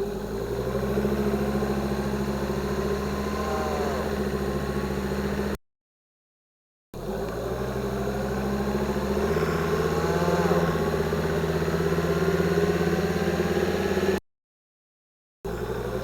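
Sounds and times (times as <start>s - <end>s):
engine humming: 0.0s - 5.6s, 7.2s - 14.2s.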